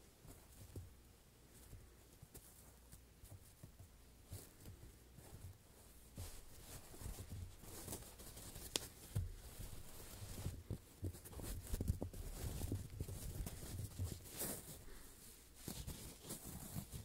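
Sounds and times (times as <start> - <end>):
foam blocks scratching and squishing: 9.5 - 17.0.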